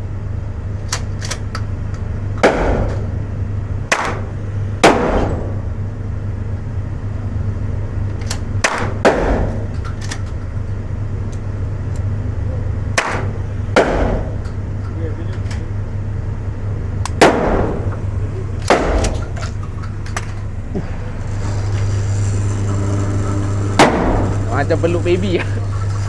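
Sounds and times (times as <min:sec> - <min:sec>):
steady low hum: 0:00.0 - 0:26.0
gunshots: 0:02.4 - 0:03.2, 0:03.9 - 0:05.7, 0:08.6 - 0:09.8, 0:13.0 - 0:14.5, 0:17.1 - 0:19.5, 0:23.8 - 0:24.6.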